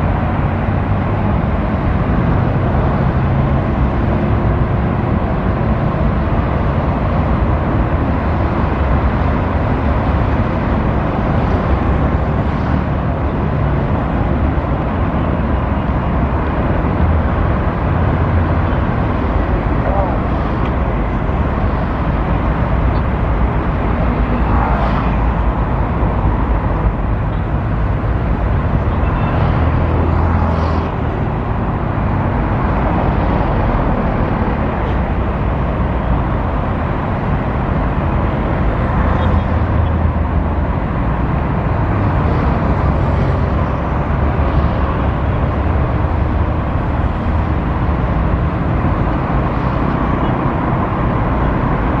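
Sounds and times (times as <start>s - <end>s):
low engine rumble: 0.0s - 52.0s.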